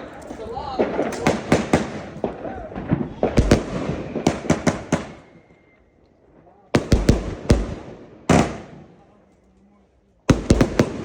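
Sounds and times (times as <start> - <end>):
firework bangs with hiss: 0.7 - 5.4, 6.8 - 8.9, 10.3 - 11.0.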